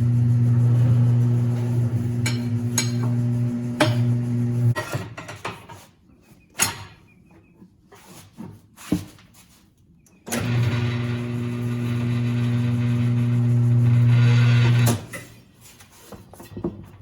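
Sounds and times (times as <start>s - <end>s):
steady machine hum: 0.0s - 4.8s, 10.4s - 14.9s
metal clanks of tire changer: 1.6s - 3.2s.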